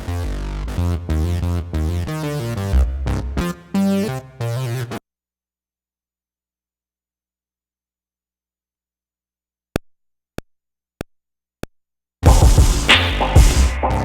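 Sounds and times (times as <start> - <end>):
heavy bass line: 0.0 - 3.7, 12.2 - 14.0
synth chords: 12.2 - 14.0.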